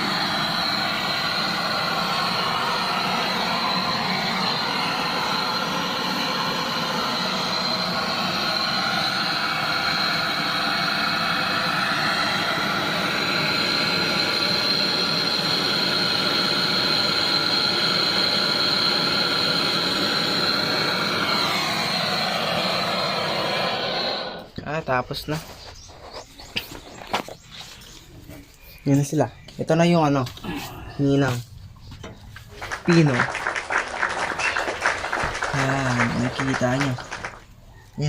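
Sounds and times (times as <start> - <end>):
gas torch flame hissing: 0.0 - 24.6, 32.8 - 37.5
thin whistle: 32.7 - 37.9.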